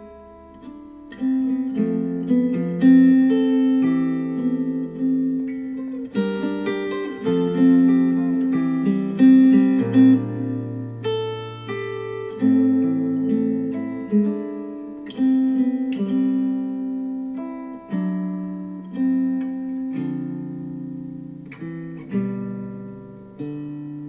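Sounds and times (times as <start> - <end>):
acoustic guitar chords: 0.0 - 24.0.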